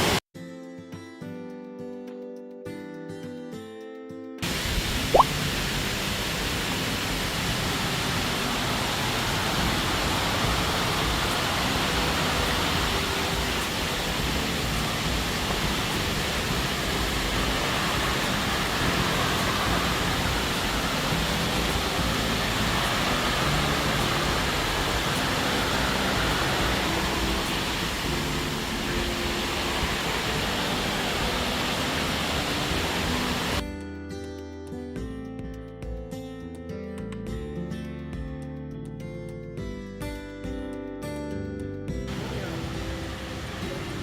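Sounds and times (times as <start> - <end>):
waterfall: 0.0 - 0.2, 4.4 - 33.6, 42.1 - 44.0.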